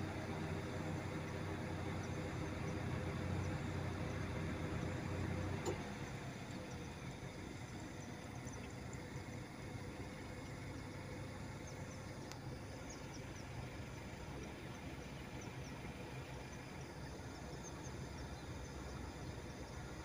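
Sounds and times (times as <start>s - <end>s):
low mechanical hum: 0.0s - 20.0s
click: 5.6s - 5.9s, 12.2s - 12.5s
faint bird chirps: 5.6s - 20.0s.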